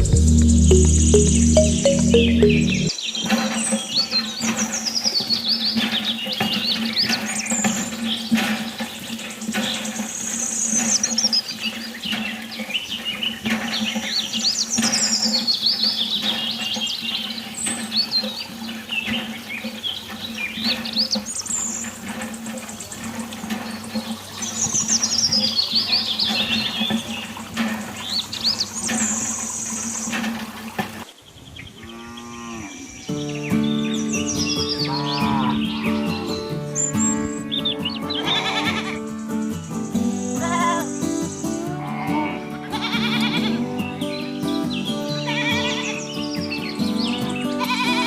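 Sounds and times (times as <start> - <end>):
low hum in background music: 0.0 - 2.9
bird chirping song: 0.0 - 30.2, 31.1 - 48.0.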